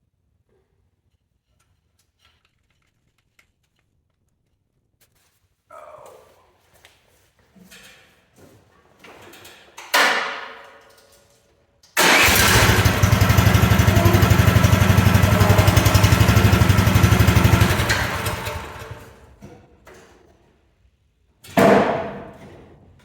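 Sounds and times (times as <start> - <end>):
excavator engine running: 12.0 - 19.3.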